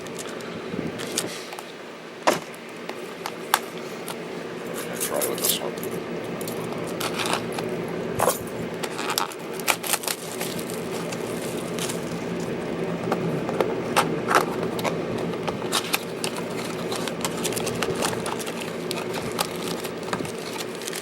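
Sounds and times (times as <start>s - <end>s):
packaging crinkling and crackling: 2.3s - 21.0s
plastic packaging snapping: 6.4s - 12.5s, 13.1s - 21.0s.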